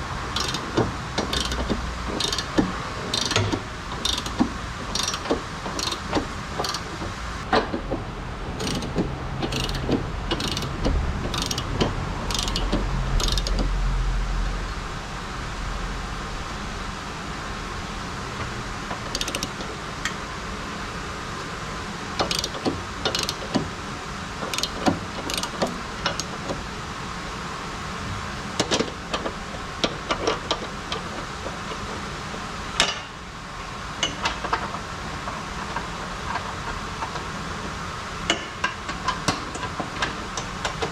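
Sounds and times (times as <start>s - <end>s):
socket ratchet clicking: 0.3s - 7.5s, 8.6s - 13.7s, 19.1s - 19.6s, 22.2s - 23.6s, 24.4s - 26.3s.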